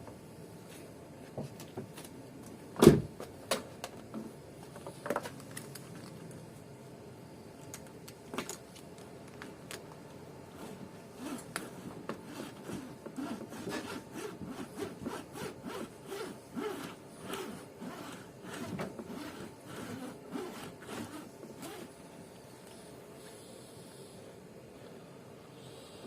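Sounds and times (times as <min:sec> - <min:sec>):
wire sawing through windscreen bond: 0:10.6 - 0:21.9.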